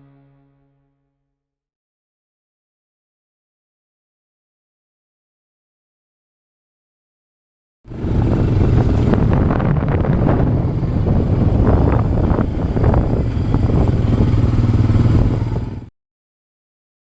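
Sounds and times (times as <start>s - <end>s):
atv engine running: 7.9s - 15.9s.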